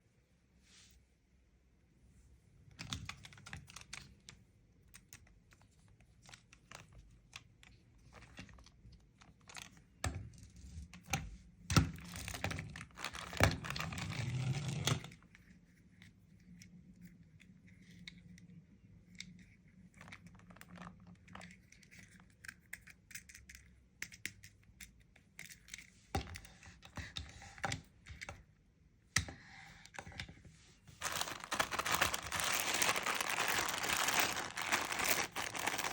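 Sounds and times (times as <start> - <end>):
packaging rustling and tearing: 12.1 - 14.6, 31.0 - 35.9
packaging taps and clicks: 31.0 - 35.9.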